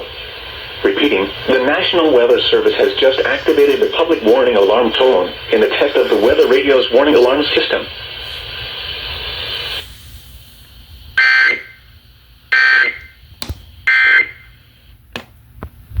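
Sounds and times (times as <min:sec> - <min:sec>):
radio hiss: 0:00.0 - 0:09.8.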